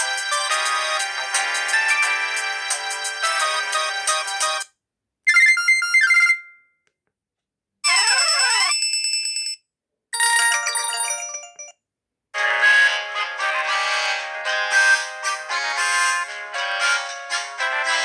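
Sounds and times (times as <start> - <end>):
mobile phone ringtone snippets: 5.3 - 6.6, 10.2 - 11.7.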